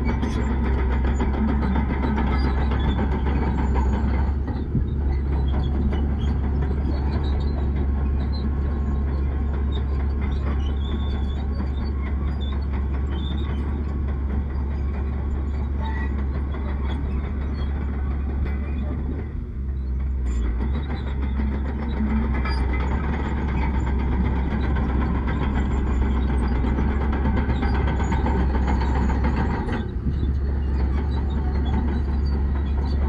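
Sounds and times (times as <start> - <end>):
diesel engine rumble: 0.0 - 33.0
crawler tracks clattering: 20.4 - 33.0.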